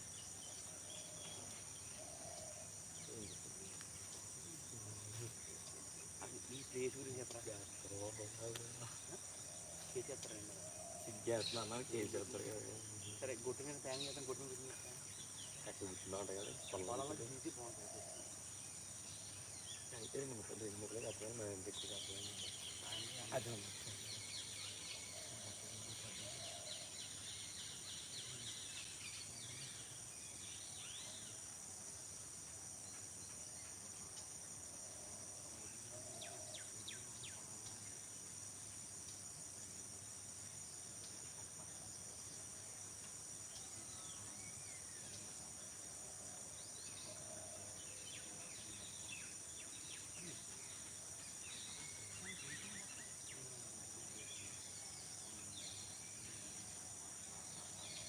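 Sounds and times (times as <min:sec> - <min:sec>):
crickets droning: 0:00.0 - 0:58.0.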